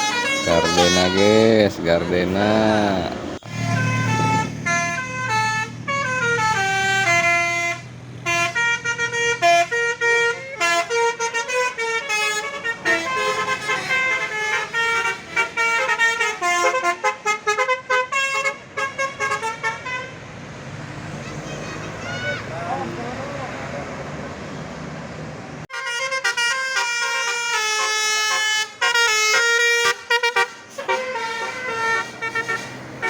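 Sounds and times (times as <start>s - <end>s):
bus engine running: 0.0s - 17.8s, 18.6s - 25.7s
musical air horn tune: 0.0s - 20.1s, 25.7s - 33.0s.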